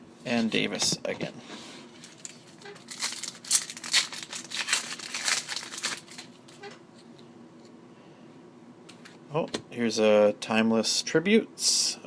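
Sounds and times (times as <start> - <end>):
papery rustles and crinkles: 1.9 - 6.6.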